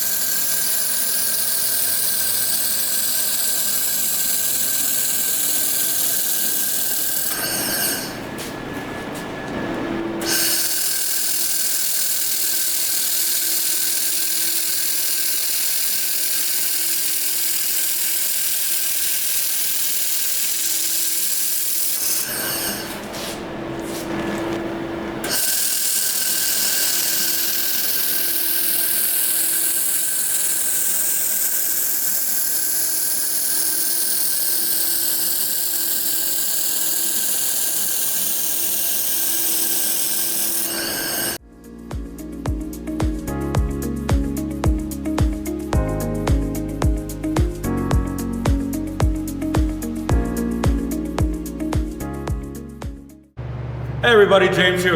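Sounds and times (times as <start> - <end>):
fuller power tool sound: 0.0 - 41.4
power tool running with whine: 0.0 - 41.4.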